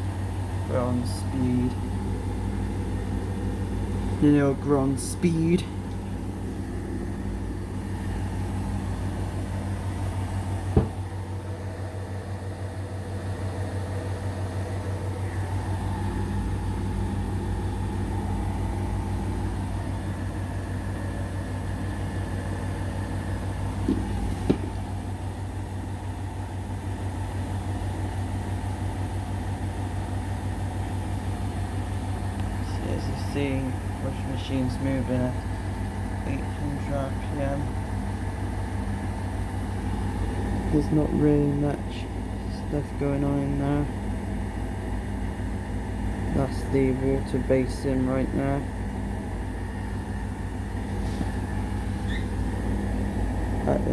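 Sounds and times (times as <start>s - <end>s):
washing machine spinning: 0.0s - 53.9s
sharp knocks: 10.7s - 11.0s.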